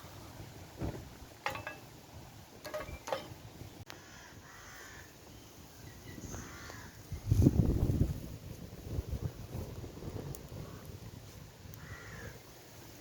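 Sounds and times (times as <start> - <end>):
crow cawing: 3.9 - 5.1, 6.4 - 7.0, 11.8 - 12.4.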